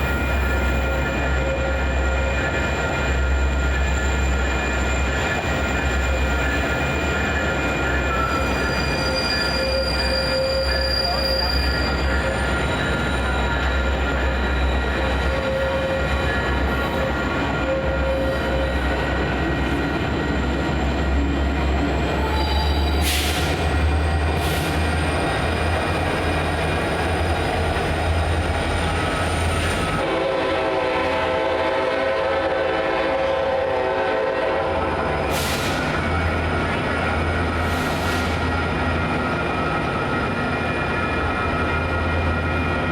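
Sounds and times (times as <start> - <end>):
train wheels squealing: 0.0 - 30.1, 35.0 - 42.9
train rumbling: 0.0 - 42.9
train horn: 15.2 - 16.2, 16.9 - 18.7, 30.0 - 35.5.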